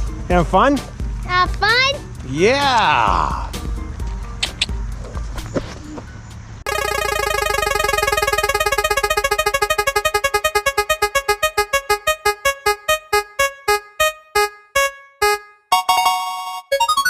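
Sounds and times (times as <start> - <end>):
electronic spinning wheel plinks: 6.7 - 10.2.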